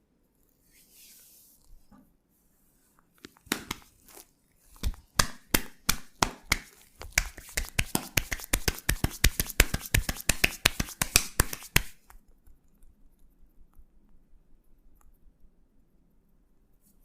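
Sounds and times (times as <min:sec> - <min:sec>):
hands slapping in massage: 0:03.2 - 0:04.2, 0:04.8 - 0:12.0.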